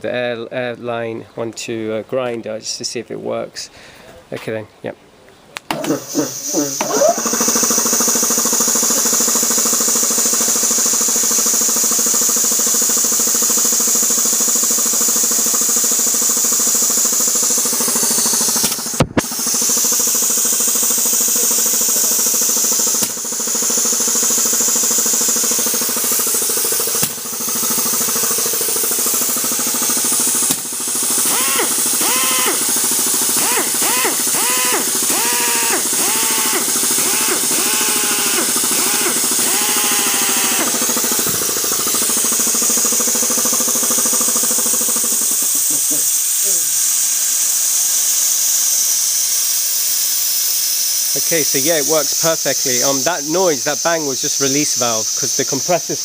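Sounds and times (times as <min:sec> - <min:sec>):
rising and falling whine: 0:05.7 - 0:12.2, 0:15.5 - 0:47.5
release valve bang: 0:05.7 - 0:54.8
piston compressor pump running: 0:05.7 - 0:56.0.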